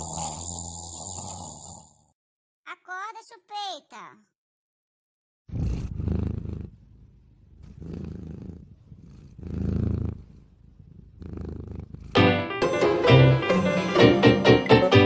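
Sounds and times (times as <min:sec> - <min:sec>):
sleeping pet breathing rumble: 0:00.0 - 0:02.0, 0:05.5 - 0:12.2
music: 0:12.2 - 0:15.0.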